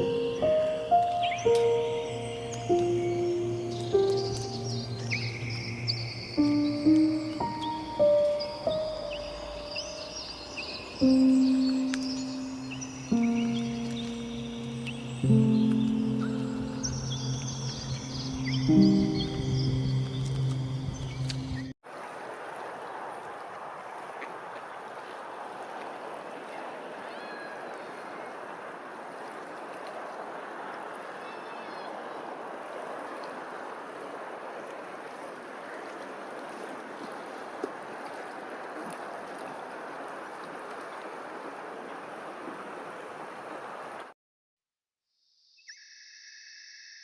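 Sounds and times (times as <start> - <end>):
faint bird chirps: 0.0 - 21.7, 45.4 - 47.0
stream water flowing: 0.0 - 44.1.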